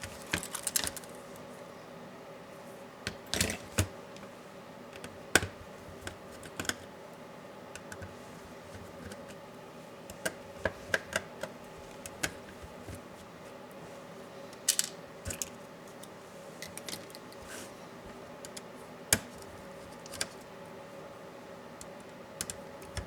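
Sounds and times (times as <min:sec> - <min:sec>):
faint hum: 0:00.0 - 0:23.0
hand tools clicking and tapping: 0:21.8 - 0:23.0.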